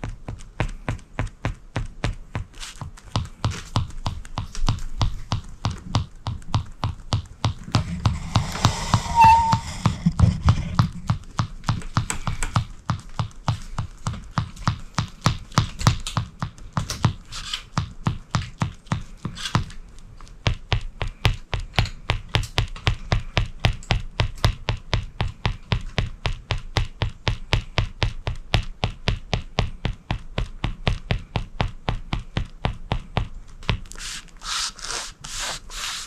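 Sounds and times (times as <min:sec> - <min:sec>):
footsteps on hardwood floor: 0:00.0 - 0:11.3.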